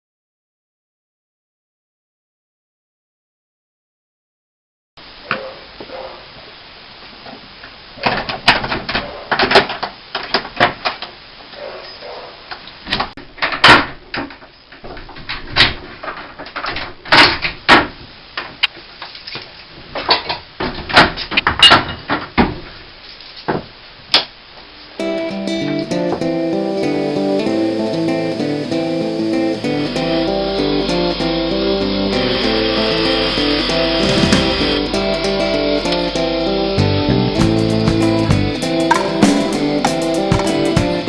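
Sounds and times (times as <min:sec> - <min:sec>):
guitar music: 0:25.0 - 0:41.0.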